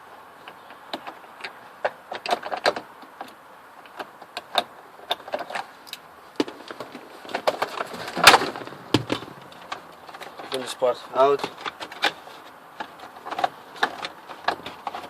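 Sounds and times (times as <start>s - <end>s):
hand tools clicking on plastic: 12.8s - 15.0s.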